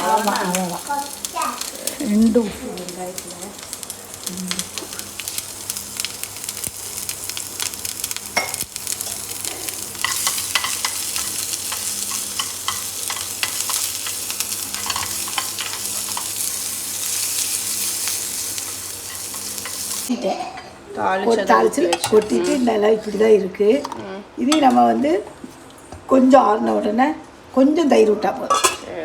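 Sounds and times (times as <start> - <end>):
oil sizzling: 0.0 - 20.2
spoon stirring and tapping pan: 10.0 - 16.5.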